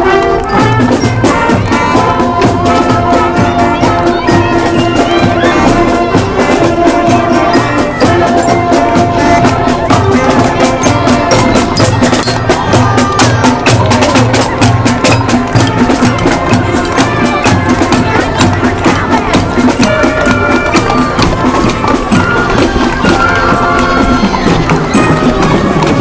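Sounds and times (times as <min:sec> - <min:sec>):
clacking percussion beat: 0:00.0 - 0:26.0
sustained pitched instruments: 0:00.0 - 0:26.0.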